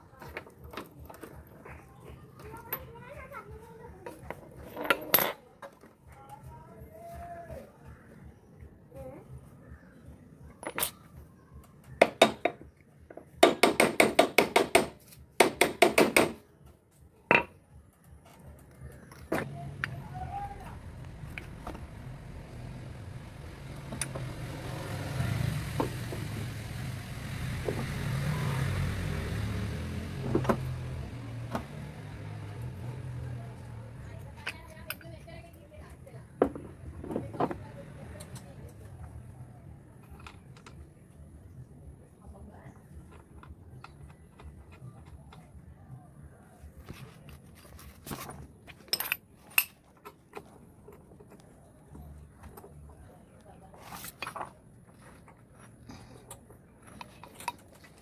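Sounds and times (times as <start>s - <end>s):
metal tools clinking: 4.3s - 5.8s, 47.3s - 51.2s
vehicle engine humming: 17.9s - 47.5s.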